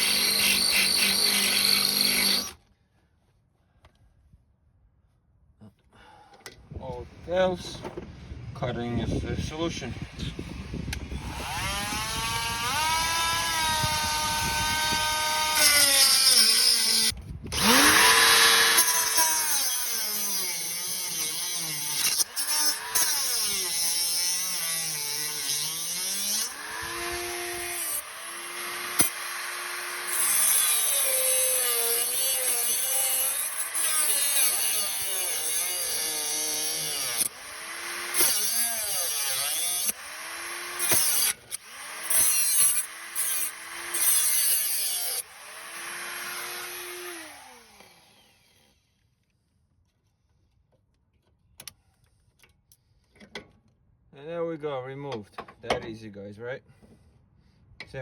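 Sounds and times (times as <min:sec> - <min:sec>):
power tool cutting steel: 0:00.0 - 0:02.6, 0:11.2 - 0:48.9.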